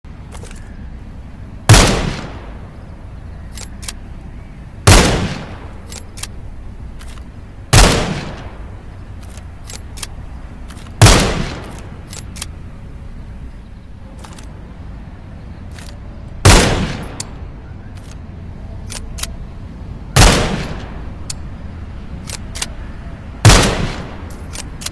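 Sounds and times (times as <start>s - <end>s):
rifle shots with echo: 1.7s - 2.6s, 4.9s - 6.0s, 7.7s - 8.6s, 11.0s - 12.1s, 16.4s - 17.4s, 20.2s - 21.0s, 23.4s - 24.4s
faint clicks: 3.4s - 4.3s, 9.1s - 11.0s, 11.6s - 12.6s, 21.2s - 21.6s, 22.2s - 22.8s.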